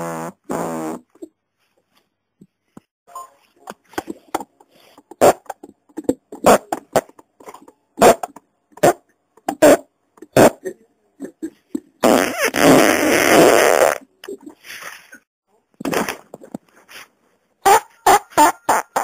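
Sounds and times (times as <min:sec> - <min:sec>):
person farting: 0:00.0 - 0:01.3, 0:05.1 - 0:05.7, 0:06.4 - 0:07.2, 0:08.0 - 0:14.5, 0:18.1 - 0:19.0.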